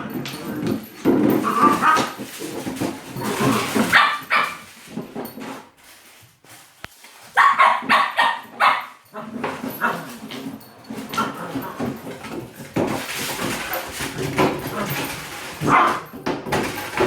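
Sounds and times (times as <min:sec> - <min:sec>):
puppy barking and yipping: 0:03.8 - 0:04.6, 0:07.4 - 0:09.0.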